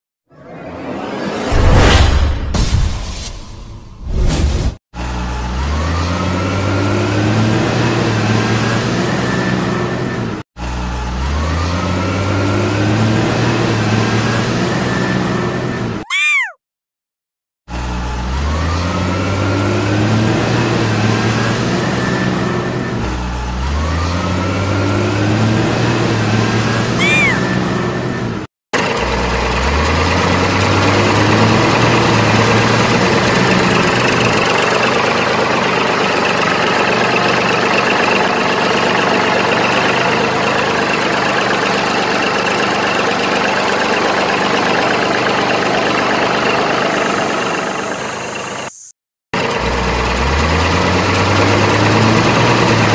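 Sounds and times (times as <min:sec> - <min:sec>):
vehicle engine revving: 0:05.0 - 0:15.7, 0:17.7 - 0:41.3, 0:49.4 - 0:52.9.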